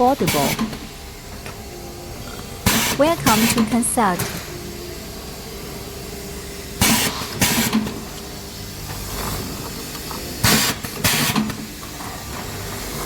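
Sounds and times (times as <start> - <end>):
machine hum: 0.0 - 9.2.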